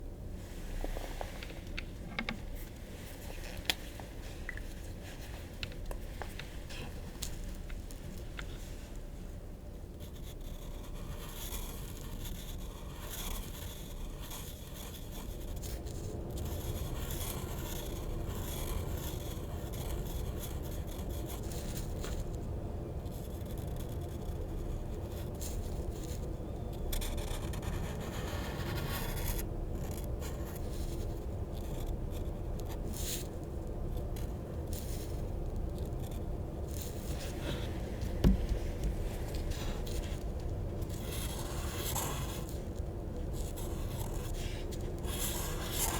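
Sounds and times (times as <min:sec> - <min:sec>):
low background hum: 0:00.0 - 0:45.9.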